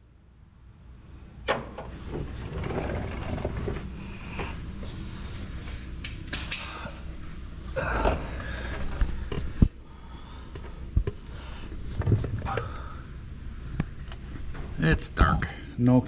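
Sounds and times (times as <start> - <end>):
hand tools rustling and clinking: 1.9 - 6.8, 7.8 - 9.6, 11.6 - 13.0.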